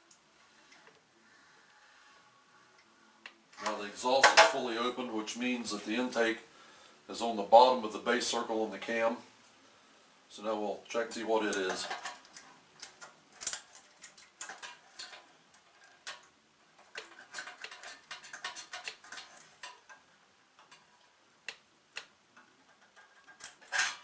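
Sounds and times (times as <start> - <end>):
metallic clicks and light scrapes: 11.4 - 24.0.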